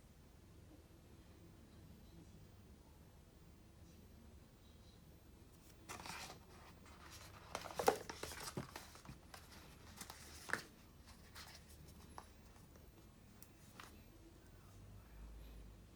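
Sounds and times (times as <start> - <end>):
packaging rustling: 5.9 - 12.3.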